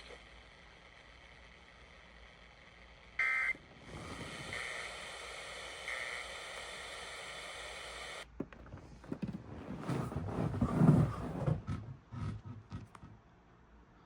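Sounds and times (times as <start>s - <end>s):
radio hiss: 3.1s - 8.2s.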